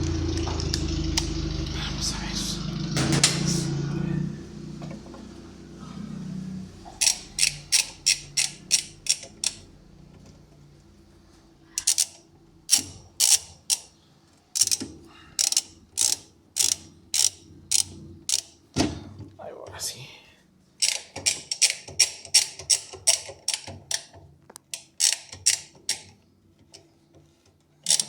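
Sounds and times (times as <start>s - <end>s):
ratchet wrench clicking: 7.0s - 9.6s, 11.8s - 13.9s, 14.6s - 14.8s, 15.4s - 18.6s, 20.8s - 24.1s, 24.7s - 26.1s.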